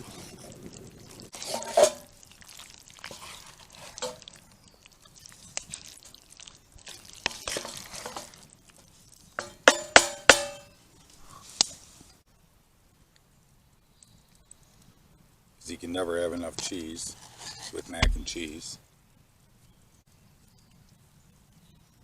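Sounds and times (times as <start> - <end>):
metal utensil scraping in pot: 1.3 - 2.2, 3.1 - 4.4, 6.9 - 8.4, 17.0 - 17.8
ringing taps on pot: 9.4 - 10.7.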